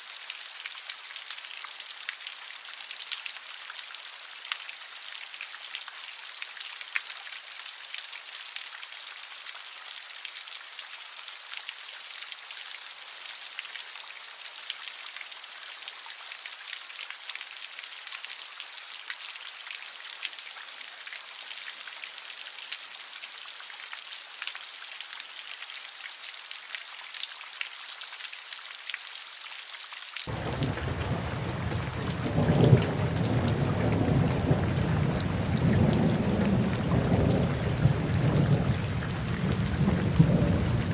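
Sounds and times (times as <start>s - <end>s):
rain pattering: 21.0s - 40.9s.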